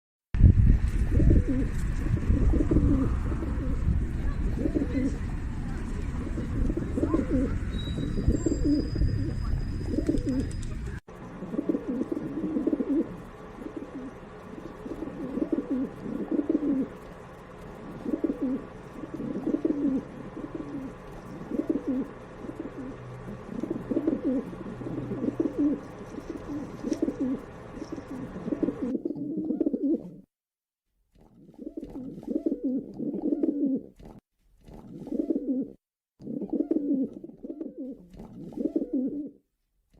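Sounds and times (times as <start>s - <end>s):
low rumble: 0.4s - 11.0s
pigeons cooing: 1.1s - 30.2s, 31.4s - 34.0s, 34.8s - 39.4s.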